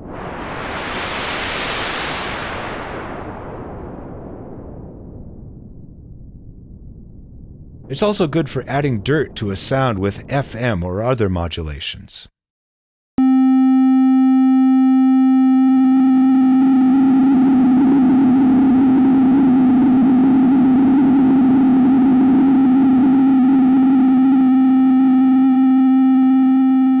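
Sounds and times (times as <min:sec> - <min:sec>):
gritty synth oscillator tone: 0:13.2 - 0:27.0.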